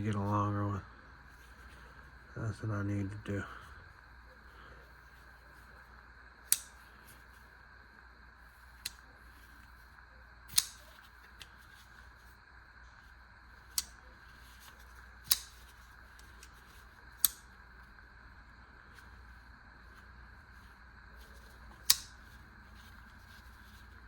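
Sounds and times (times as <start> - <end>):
pocket knife clicking open and shut: 6.5 - 6.8, 10.5 - 10.9, 13.7 - 14.0, 15.2 - 16.5, 17.2 - 17.4, 21.7 - 22.2.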